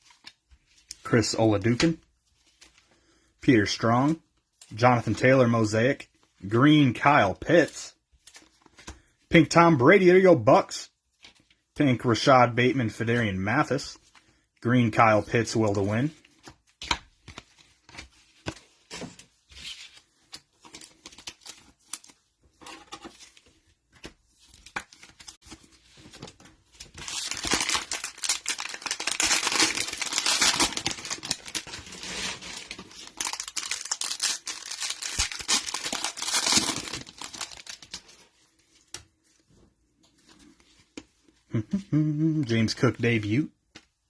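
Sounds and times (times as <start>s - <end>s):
cellophane wrapper crinkling: 26.7s - 38.9s.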